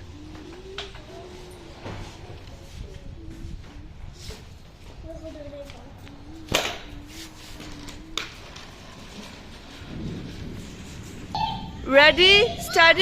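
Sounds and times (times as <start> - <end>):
gusty wind on microphone: 8.7 - 13.0.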